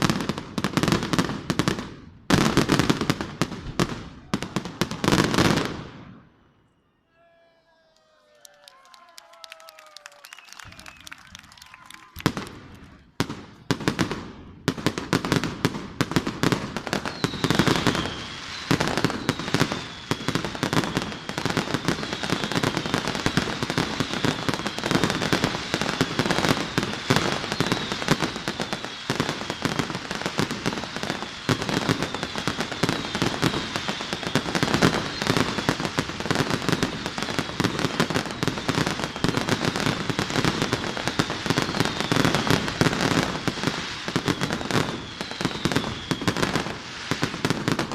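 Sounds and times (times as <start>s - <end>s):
fireworks bangs and crackling: 0.0s - 6.4s, 10.6s - 47.9s
high falling whistle: 17.0s - 25.4s, 27.2s - 35.8s, 40.7s - 42.6s, 43.8s - 46.5s.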